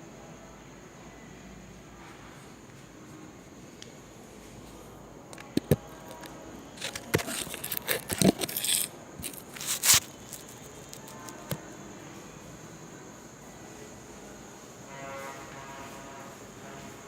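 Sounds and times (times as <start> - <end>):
scraping and rustling: 5.4 - 11.6.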